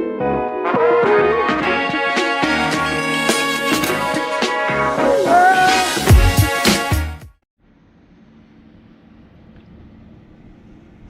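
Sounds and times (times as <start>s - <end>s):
funky background music: 0.0s - 7.4s.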